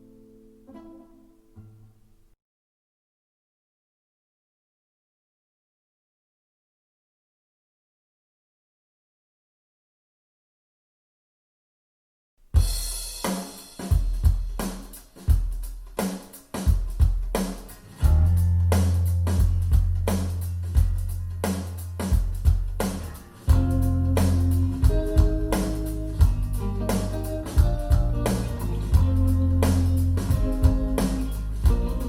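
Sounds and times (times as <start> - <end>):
drum-kit groove: 12.4 - 32.0
heavy bass line: 18.0 - 32.0
guitar or keyboard notes: 23.1 - 32.0.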